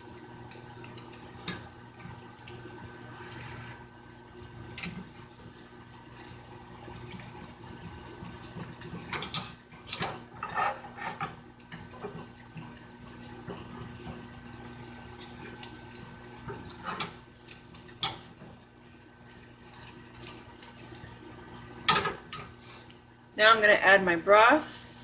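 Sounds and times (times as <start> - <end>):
roux sizzling in pan: 0.0 - 23.3
utensil scraping pan: 9.0 - 11.4.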